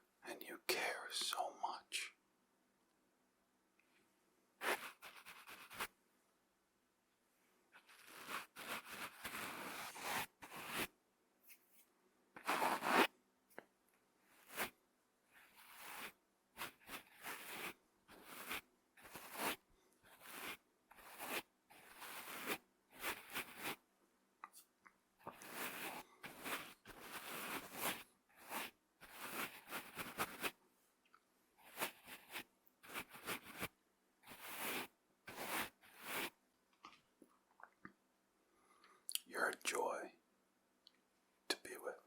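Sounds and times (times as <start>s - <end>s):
brush bristles scratching microphone: 4.6s - 5.9s, 7.8s - 10.9s, 12.4s - 13.1s, 14.4s - 14.7s, 15.5s - 23.8s, 25.3s - 30.5s, 31.6s - 33.7s, 34.3s - 36.3s.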